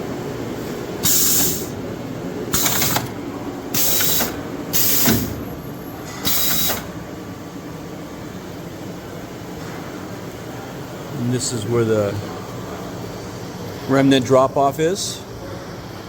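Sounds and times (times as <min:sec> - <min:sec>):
steady machine hum: 0:00.0 - 0:16.0
short hissing bursts: 0:01.0 - 0:01.8.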